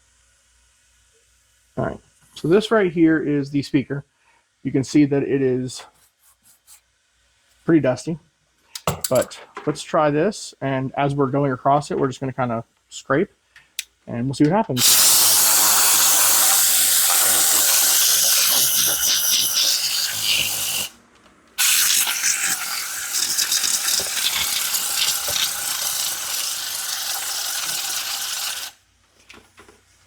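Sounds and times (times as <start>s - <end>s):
air blow gun hissing: 14.8s - 21.0s, 21.6s - 28.8s.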